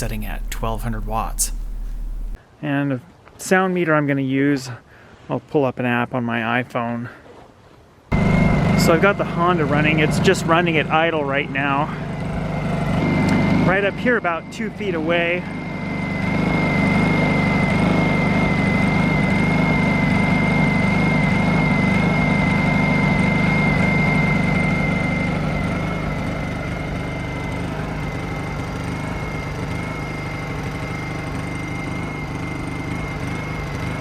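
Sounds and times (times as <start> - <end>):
generator engine hum with whine: 0.0 - 2.4, 8.1 - 34.0.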